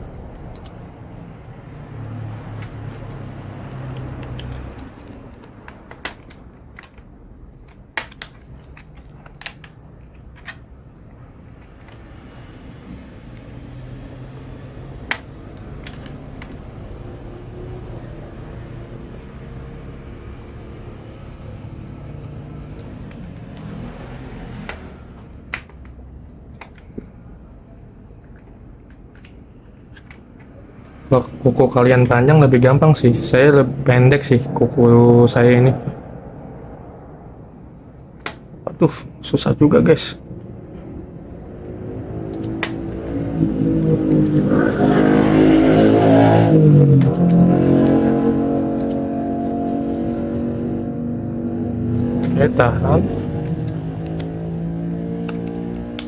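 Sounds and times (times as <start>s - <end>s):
vehicle engine accelerating past: 0.0s - 5.2s, 12.1s - 25.3s, 30.6s - 38.1s, 40.2s - 56.0s
plastic clips snapping: 2.6s - 10.7s, 15.0s - 17.1s.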